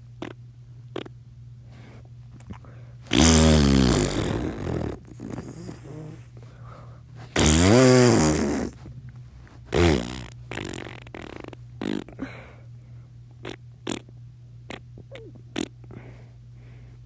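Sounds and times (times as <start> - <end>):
fake fart noises: 0.0 - 1.2, 3.1 - 6.2, 7.4 - 8.8, 9.7 - 12.2, 13.4 - 14.1, 14.7 - 15.9
faint low hum: 0.0 - 17.0.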